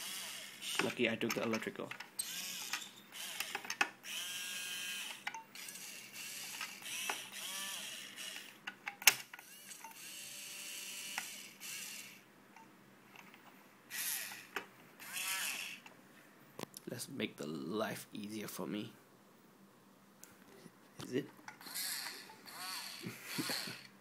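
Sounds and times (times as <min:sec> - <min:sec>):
small gearmotors whirring: 0:00.0 - 0:01.0, 0:02.2 - 0:08.6, 0:09.4 - 0:12.2, 0:13.9 - 0:15.8, 0:21.6 - 0:23.9.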